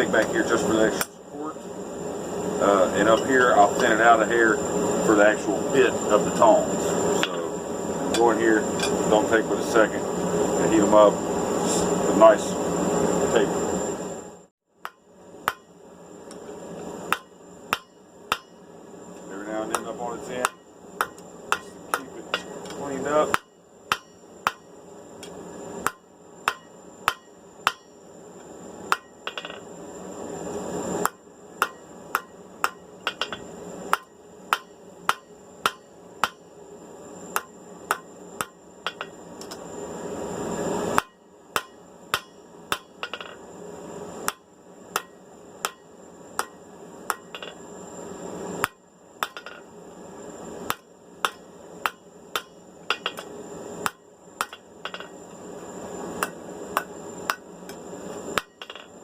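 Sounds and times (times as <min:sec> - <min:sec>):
hammer striking hot steel on anvil: 0:00.2 - 0:01.2, 0:08.1 - 0:09.1, 0:14.8 - 0:18.7, 0:19.6 - 0:28.1, 0:28.9 - 0:29.7, 0:31.0 - 0:36.5, 0:37.3 - 0:39.6, 0:40.9 - 0:43.4, 0:44.2 - 0:47.6, 0:48.6 - 0:49.7, 0:50.7 - 0:55.2, 0:56.2 - 0:59.0.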